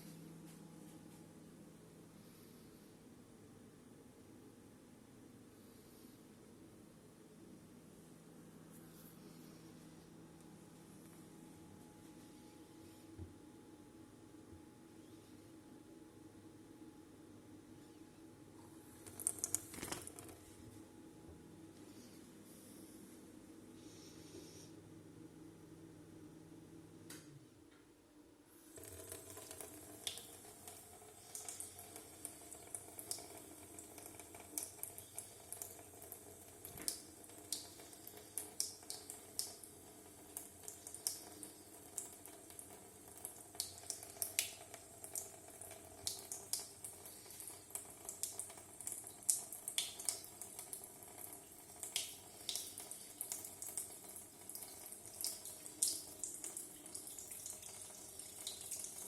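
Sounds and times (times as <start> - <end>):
tap water running into sink: 19.0 - 20.4, 28.7 - 59.0.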